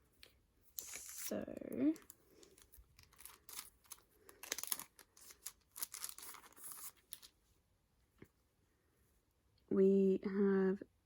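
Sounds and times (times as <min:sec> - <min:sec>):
packaging rustling and tearing: 0:00.8 - 0:07.3.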